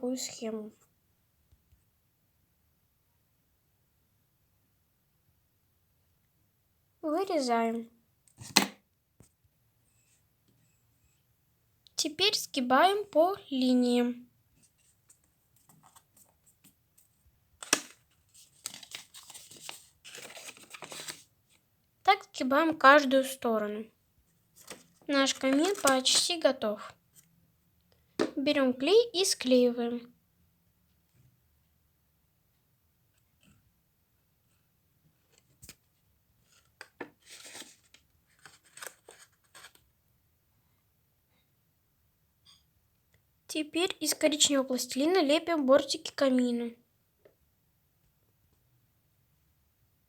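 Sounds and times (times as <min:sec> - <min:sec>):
paper rustling and crinkling: 0:17.6 - 0:21.6, 0:24.6 - 0:26.4, 0:36.5 - 0:39.8.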